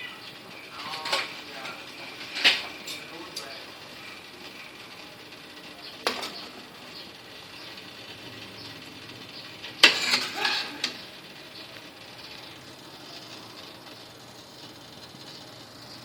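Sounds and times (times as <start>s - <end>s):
kitchenware clattering: 0.8s - 3.5s, 6.0s - 6.6s, 9.6s - 11.0s.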